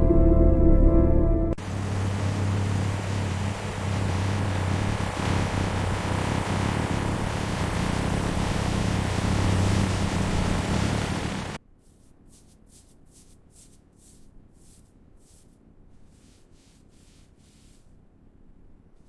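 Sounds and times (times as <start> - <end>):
car engine running: 1.6 - 11.6
short hissing strokes: 1.6 - 11.6.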